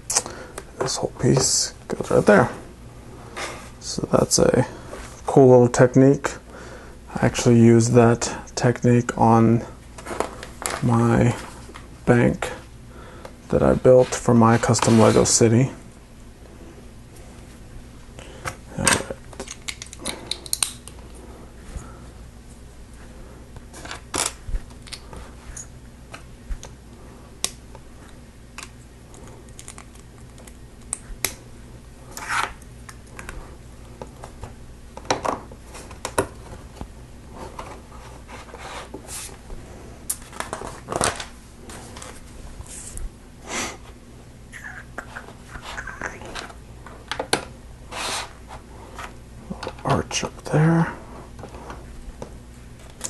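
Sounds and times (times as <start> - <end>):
low steady hum: 0.0 - 53.0.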